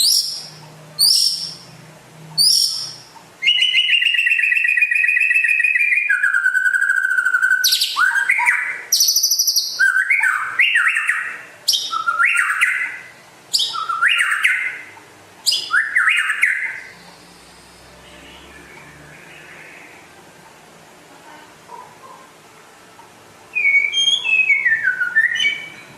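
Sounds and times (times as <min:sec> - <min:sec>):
bird singing whistled phrases: 0:00.0 - 0:01.6, 0:02.4 - 0:14.9, 0:15.5 - 0:17.0, 0:23.5 - 0:25.9.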